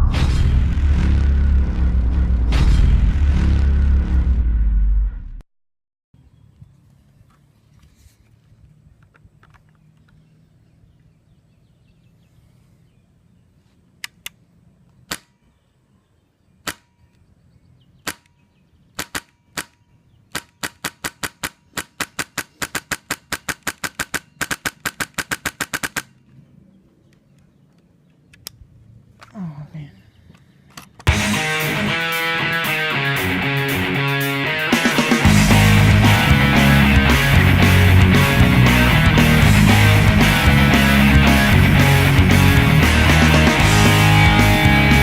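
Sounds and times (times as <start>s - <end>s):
airsoft rifle shots: 16.6s - 17.0s, 18.0s - 18.4s, 19.0s - 26.2s.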